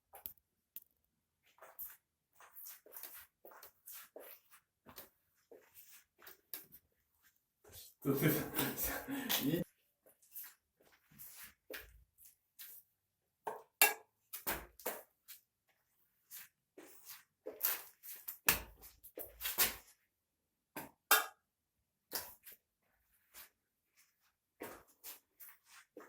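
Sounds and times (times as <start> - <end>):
glue brush swishing against wall: 1.4 - 7.4.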